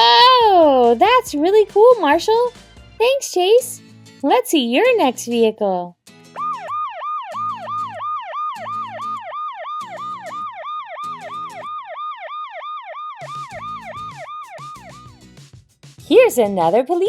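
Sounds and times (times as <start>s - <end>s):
toy electronic police siren: 6.4s - 15.2s.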